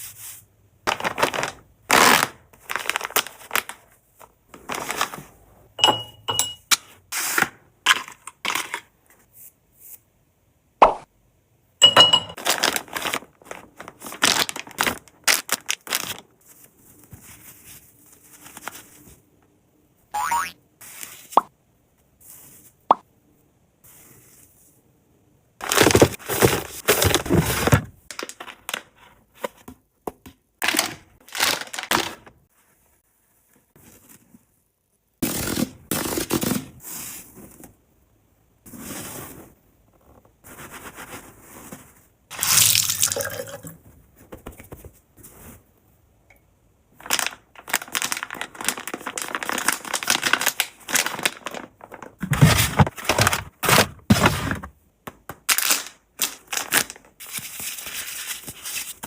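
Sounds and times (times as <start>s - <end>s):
packaging rustling and crinkling: 0.9s - 5.4s, 12.4s - 19.2s, 25.6s - 29.6s, 30.6s - 32.3s, 47.0s - 54.7s.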